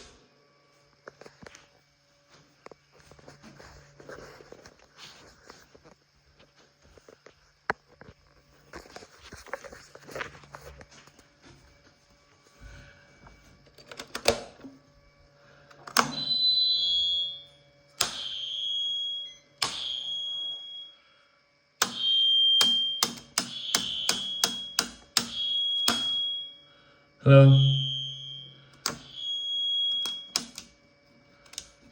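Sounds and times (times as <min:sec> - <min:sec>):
high ringing tone: 0:16.0 - 0:21.3, 0:21.9 - 0:30.4
sharp clicks: 0:30.0 - 0:30.7.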